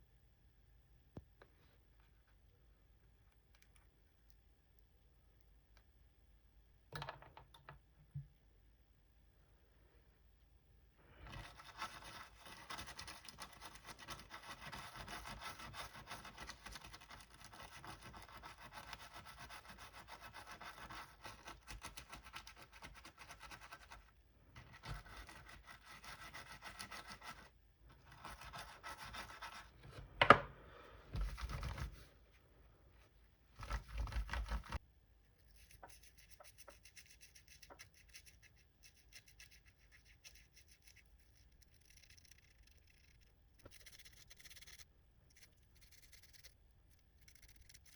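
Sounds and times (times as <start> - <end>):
brush scrubbing laptop keys: 11.3 - 24.0, 24.7 - 27.5, 28.1 - 29.7, 35.5 - 47.9.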